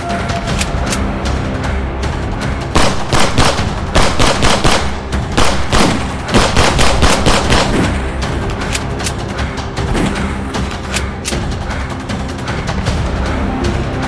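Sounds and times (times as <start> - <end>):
background music: 0.0 - 14.0
rapid gunfire sound effects: 2.7 - 13.4.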